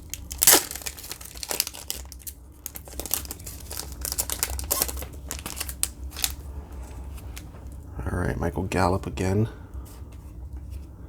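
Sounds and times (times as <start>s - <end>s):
card pack wrapper tearing: 0.0s - 6.4s
wrapper crinkling: 0.0s - 7.8s.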